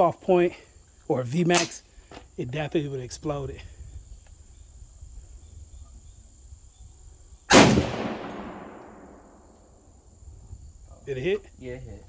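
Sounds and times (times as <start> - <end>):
high insect trill: 0.0 - 12.0
rifle shot with echo: 7.5 - 9.5.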